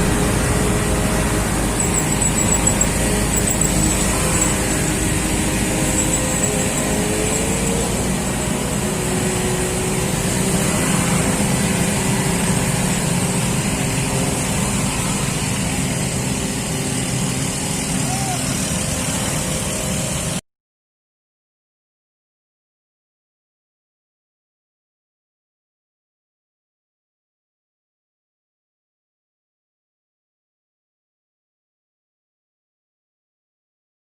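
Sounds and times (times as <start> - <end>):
engine running steadily: 0.0 - 20.4.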